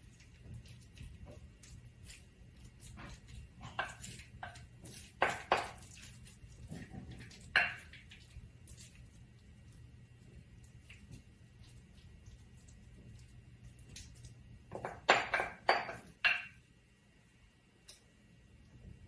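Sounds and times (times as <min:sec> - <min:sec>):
utensil scraping a bowl: 0:00.6 - 0:09.0.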